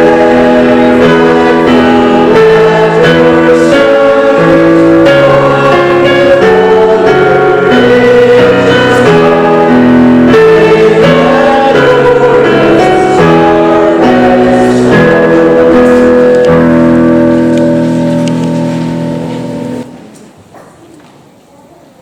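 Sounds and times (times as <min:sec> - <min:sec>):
hymn with instrumental accompaniment: 0:00.0 - 0:19.8.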